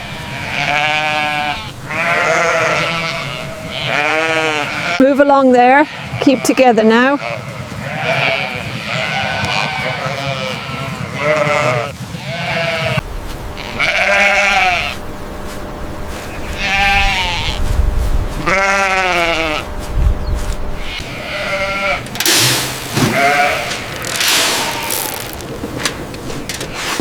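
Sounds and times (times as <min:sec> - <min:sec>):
sheep bleating: 0:00.0 - 0:15.0, 0:16.1 - 0:25.5
rushing noise: 0:22.2 - 0:26.5.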